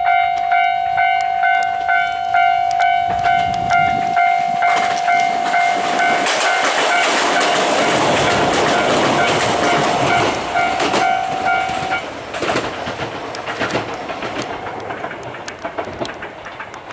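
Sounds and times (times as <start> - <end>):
level crossing warning bell: 0.0 - 12.1
train wheels clattering over rail joints: 3.1 - 16.9.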